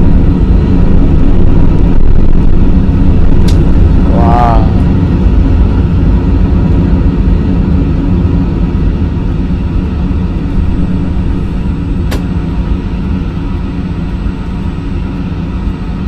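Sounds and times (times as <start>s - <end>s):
jet takeoff rumble: 0.0s - 16.0s
sharp click: 3.4s - 3.7s, 12.1s - 12.3s.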